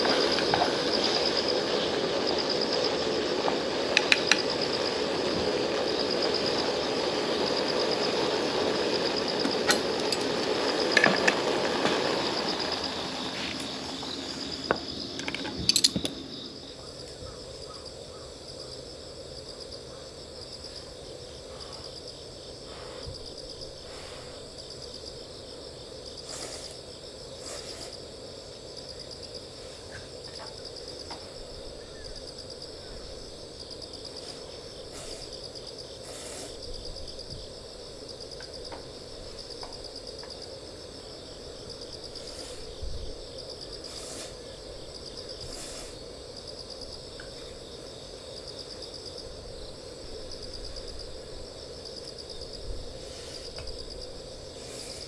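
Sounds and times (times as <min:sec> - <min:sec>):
broad rushing noise: 0:00.0 - 0:15.3, 0:32.6 - 0:48.5, 0:49.2 - 0:55.0
crickets chirping: 0:00.0 - 0:55.0.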